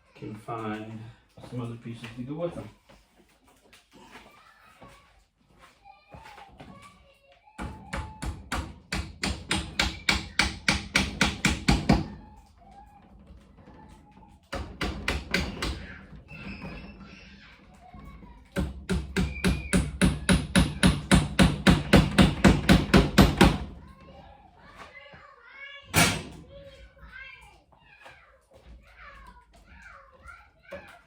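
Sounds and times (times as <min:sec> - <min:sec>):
hammer tapping on wood: 0:07.6 - 0:12.1, 0:14.5 - 0:16.0, 0:18.6 - 0:23.7.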